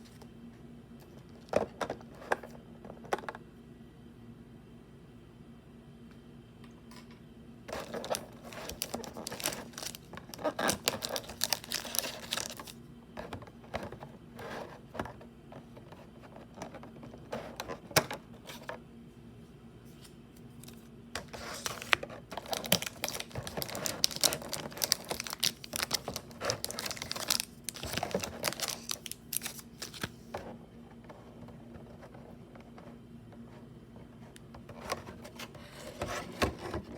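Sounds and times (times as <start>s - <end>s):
faint low hum: 0.0s - 36.9s
crinkly wrappers rustling: 7.7s - 14.1s, 19.9s - 30.3s.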